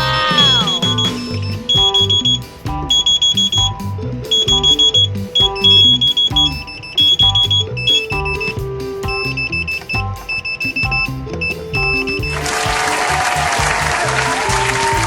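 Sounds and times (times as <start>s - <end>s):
bright repeating synth notes: 0.0s - 14.8s
background music with steady beat: 0.0s - 15.0s
bass notes: 0.0s - 15.0s.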